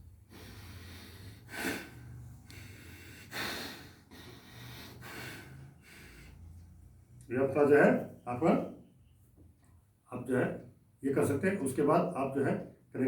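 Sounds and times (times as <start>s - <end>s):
man breathing through nose: 0.0s - 6.6s.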